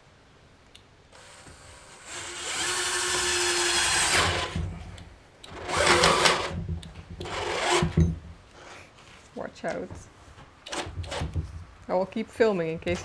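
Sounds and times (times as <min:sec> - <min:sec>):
cordless drill running: 0:01.2 - 0:08.7.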